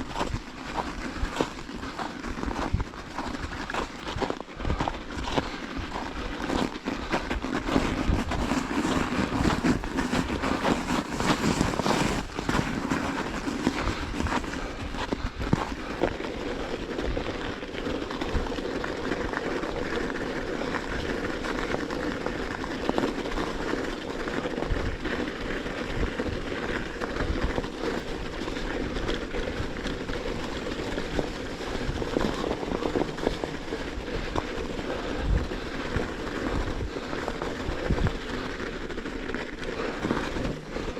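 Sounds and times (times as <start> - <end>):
tyres crunching through snow: 0.0 - 40.9.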